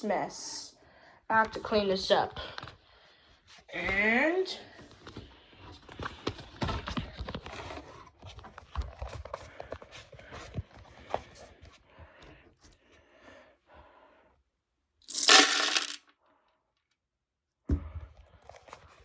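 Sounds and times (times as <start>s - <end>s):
plastic pieces clicking and clattering: 15.1s - 16.0s.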